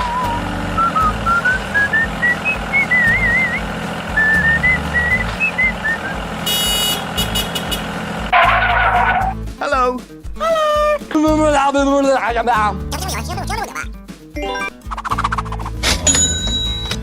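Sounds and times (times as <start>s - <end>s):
whistled tune over bouncy beat: 0.0s - 6.8s, 14.4s - 17.0s
beeping: 16.1s - 17.0s.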